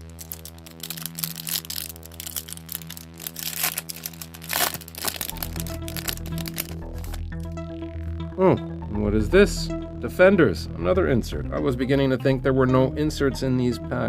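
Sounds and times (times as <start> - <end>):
trading cards and foil crinkling: 0.0 - 7.2
background music of held notes: 0.0 - 14.0.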